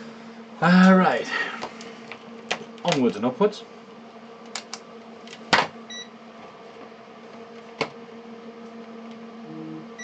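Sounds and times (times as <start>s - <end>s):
electrical hum: 0.0s - 10.0s
low buzz: 0.0s - 10.0s.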